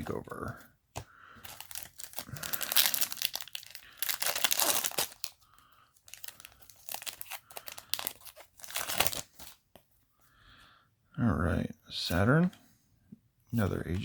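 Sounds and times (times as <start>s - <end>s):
foil wrapper crinkling and tearing: 1.4s - 5.4s, 6.0s - 9.6s.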